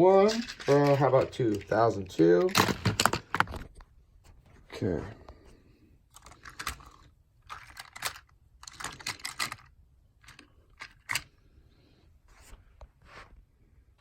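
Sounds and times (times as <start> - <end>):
plastic toy train clicks: 6.2 - 9.7.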